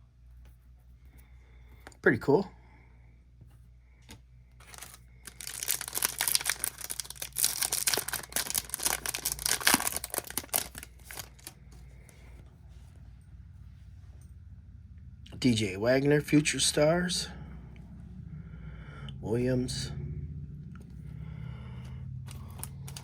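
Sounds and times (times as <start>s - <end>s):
foil wrapper tearing and crinkling: 4.6s - 11.6s, 22.3s - 23.0s.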